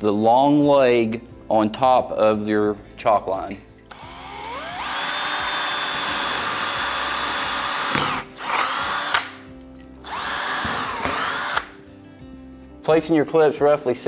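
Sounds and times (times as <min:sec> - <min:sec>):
power drill driving screws: 0:03.9 - 0:09.4, 0:10.0 - 0:11.8.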